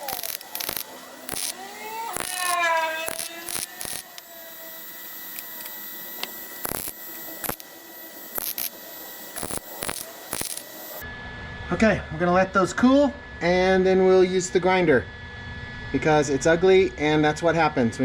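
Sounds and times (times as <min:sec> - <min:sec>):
welder crackling and hissing: 0:00.0 - 0:11.0.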